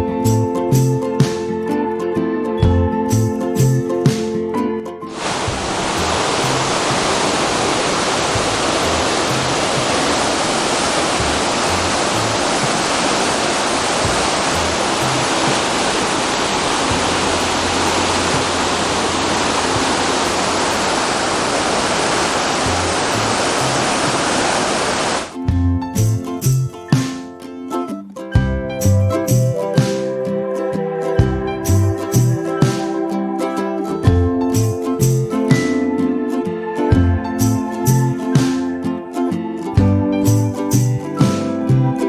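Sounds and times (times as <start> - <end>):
rushing creek water: 5.1 - 25.4.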